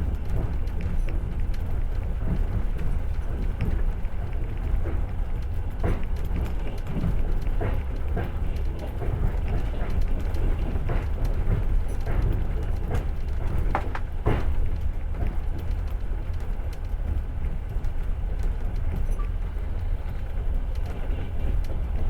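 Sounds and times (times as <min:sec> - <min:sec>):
train wheels rumbling: 0:00.0 - 0:22.0
knocks: 0:13.7 - 0:14.4.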